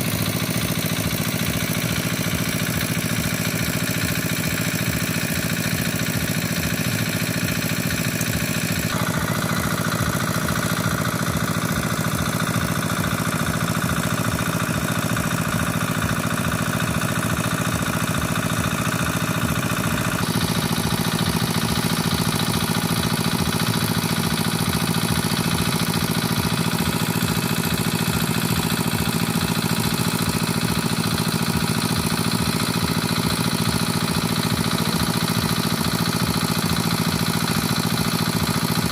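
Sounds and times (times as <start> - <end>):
engine idling: 0.0 - 38.9.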